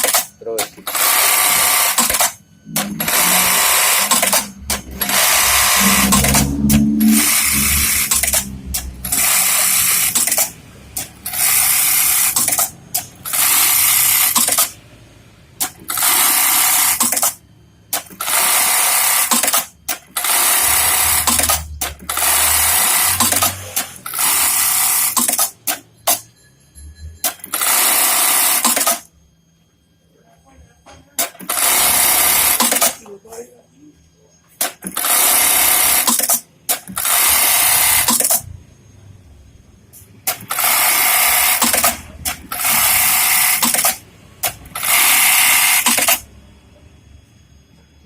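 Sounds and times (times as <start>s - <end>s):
sewing machine stitching: 0.0s - 14.8s, 15.6s - 17.4s, 18.0s - 26.2s, 27.2s - 29.1s, 31.2s - 33.0s, 34.6s - 38.4s, 40.2s - 46.3s.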